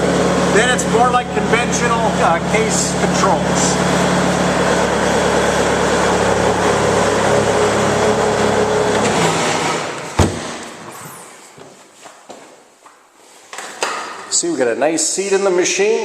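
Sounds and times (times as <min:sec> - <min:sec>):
diesel engine running: 0:00.0 - 0:10.1.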